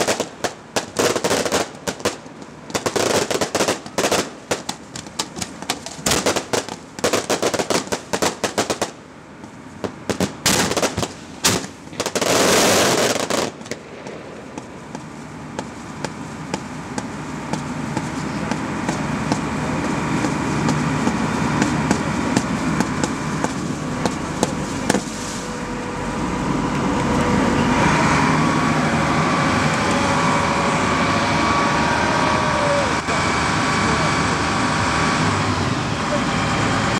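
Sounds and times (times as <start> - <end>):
fireworks bangs and crackles: 0.0 - 25.8
steady noise: 0.0 - 36.9.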